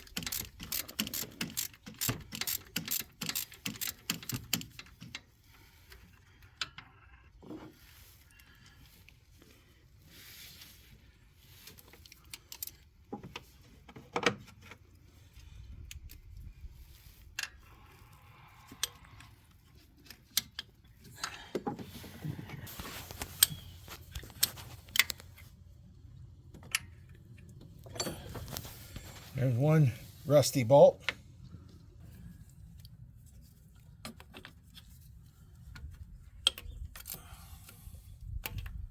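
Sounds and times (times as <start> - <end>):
metallic clicks of hand tools: 0.0 - 5.2, 36.4 - 37.8
socket wrench clicking and rattling: 0.0 - 5.2.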